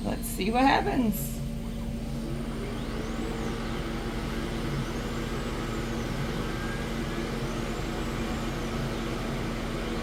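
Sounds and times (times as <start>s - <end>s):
fan and air noise: 0.0s - 10.0s
low hum: 0.0s - 10.0s
motor whine rising and falling: 1.2s - 10.0s.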